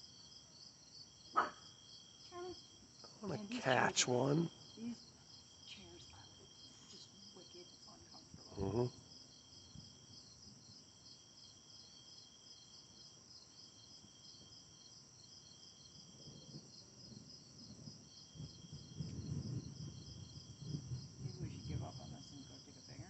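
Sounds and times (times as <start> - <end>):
crickets chirping: 0.0 - 23.0.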